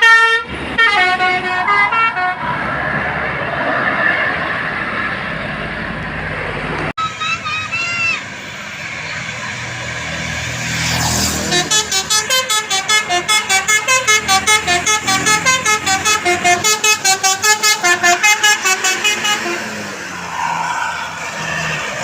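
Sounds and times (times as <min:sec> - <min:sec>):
multi-tone bus horn melody: 0:00.0 - 0:02.6, 0:11.2 - 0:20.0
bus engine: 0:00.0 - 0:22.0
rush of noise: 0:02.4 - 0:11.4.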